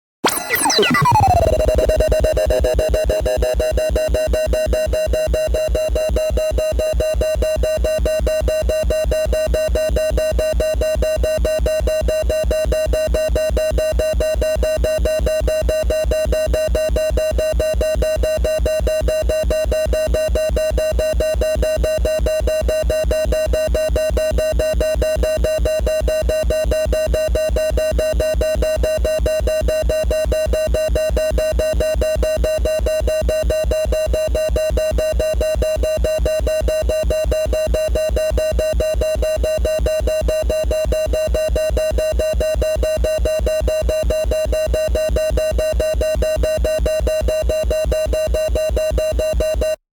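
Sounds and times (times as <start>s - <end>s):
pulsing electronic siren tone: 0.2s - 3.7s.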